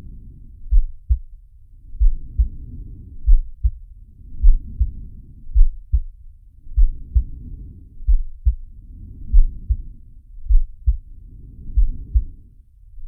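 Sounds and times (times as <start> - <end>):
soft breaths: 0.0 - 12.6
deep double-thump heartbeat: 0.7 - 1.4, 2.0 - 2.6, 3.2 - 3.8, 4.4 - 6.2, 6.8 - 7.4, 8.0 - 8.7, 9.3 - 9.9, 10.5 - 11.1, 11.7 - 12.4.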